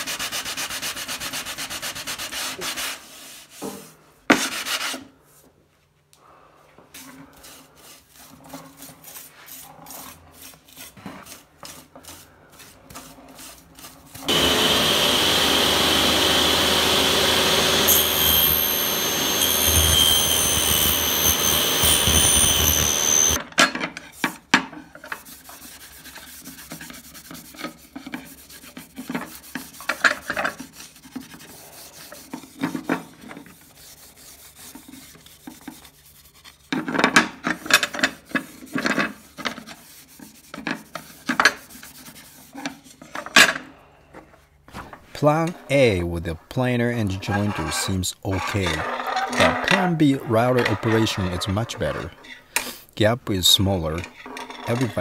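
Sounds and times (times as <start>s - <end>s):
rubbing strokes on wood: 0.0s - 5.5s, 6.8s - 23.4s, 25.0s - 36.9s, 38.3s - 43.0s
power tool whining: 14.3s - 23.4s.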